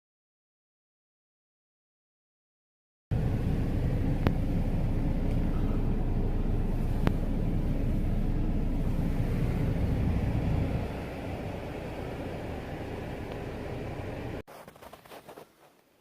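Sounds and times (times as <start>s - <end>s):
steady low rumbling: 3.1s - 14.4s.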